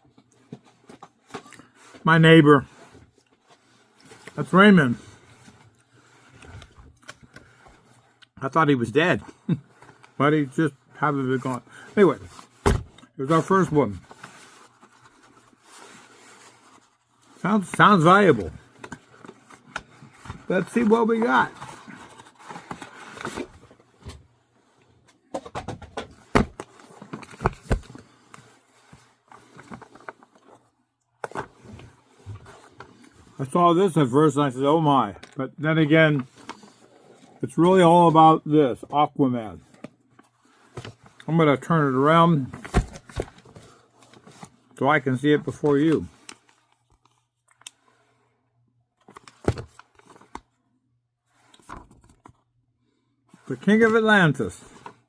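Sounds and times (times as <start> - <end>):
comic book being handled: 11.2 - 48.2, 49.0 - 50.6, 51.2 - 52.5, 53.3 - 55.0
paper rustling: 11.3 - 24.2.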